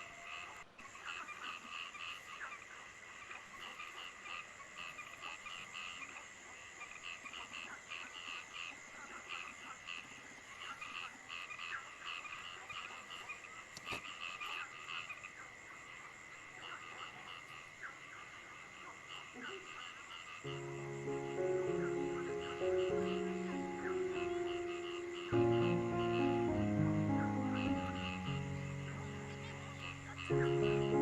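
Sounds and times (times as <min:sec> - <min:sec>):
frogs croaking in chorus: 0:00.0 - 0:31.0
falling rain hiss: 0:15.0 - 0:31.0.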